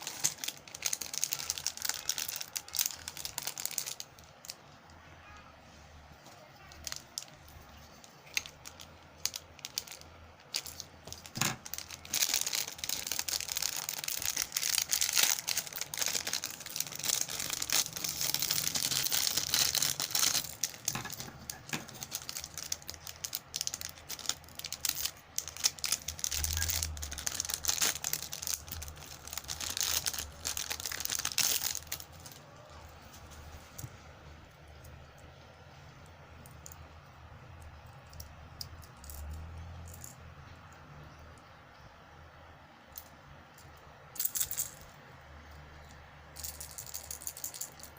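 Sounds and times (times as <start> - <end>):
packaging crinkling and tearing: 0.0 - 4.6, 6.7 - 33.8.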